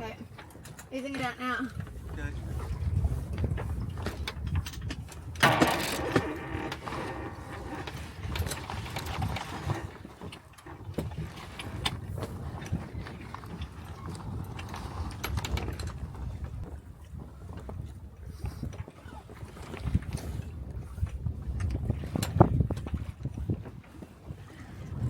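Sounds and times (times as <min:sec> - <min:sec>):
wind and water rumble: 0:00.0 - 0:25.0
winch and blocks ratcheting: 0:05.4 - 0:11.0.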